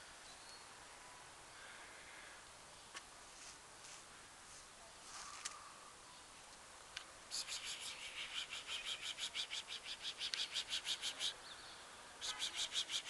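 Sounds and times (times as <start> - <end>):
raspy chirps of small animal: 7.3 - 11.4, 12.2 - 13.0.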